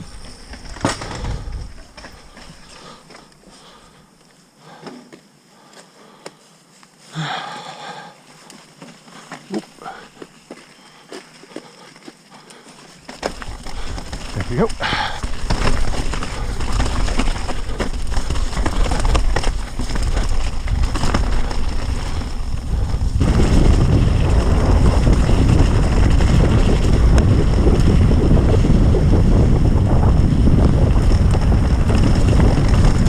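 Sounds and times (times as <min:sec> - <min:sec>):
wind buffeting microphone: 0:00.0 - 0:02.6, 0:13.3 - 0:33.0
bike rattling over rough trail: 0:00.0 - 0:06.0, 0:06.9 - 0:33.0.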